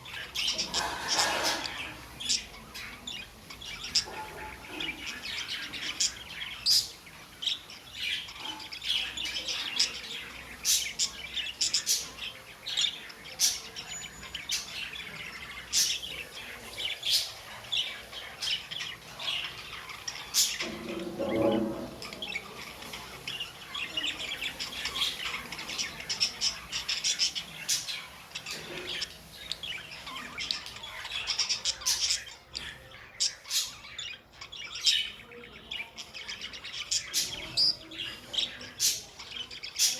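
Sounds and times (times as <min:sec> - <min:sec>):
budgies chirping: 0:00.0 - 0:39.9.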